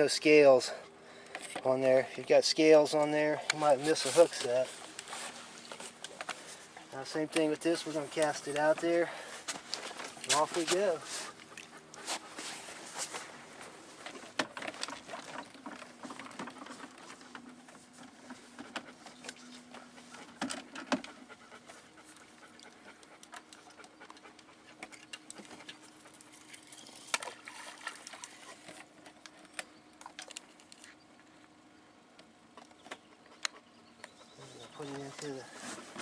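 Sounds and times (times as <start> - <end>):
fishing gear clicks and knocks: 14.0 - 17.8, 24.8 - 31.0.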